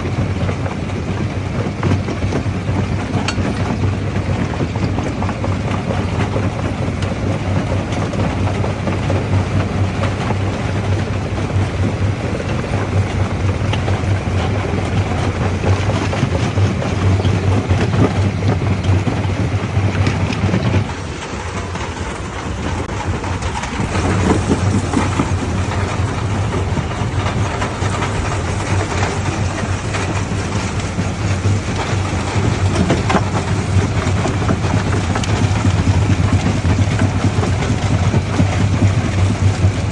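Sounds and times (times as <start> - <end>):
crusher low hum: 3.7 - 39.9
rock clattering and grinding: 23.5 - 36.3.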